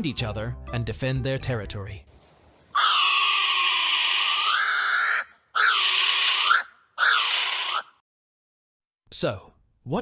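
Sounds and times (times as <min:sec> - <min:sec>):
kiwi raspy call: 0:02.8 - 0:08.0.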